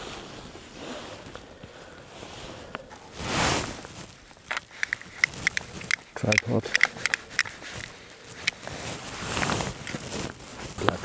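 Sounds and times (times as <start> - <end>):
clothing and gear rustling: 0.0 - 11.0
faint clicks: 4.4 - 10.1.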